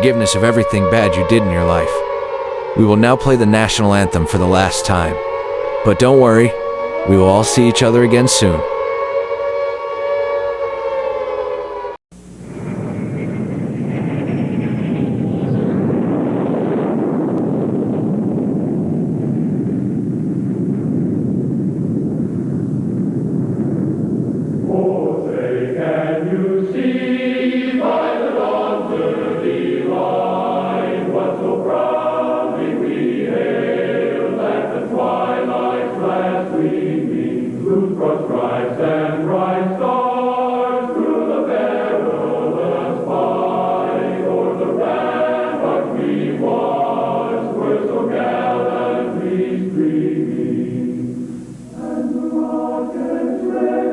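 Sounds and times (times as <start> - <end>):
choir singing an anthem: 0.0 - 11.8, 24.6 - 53.9
low rumbling roar: 12.2 - 29.4.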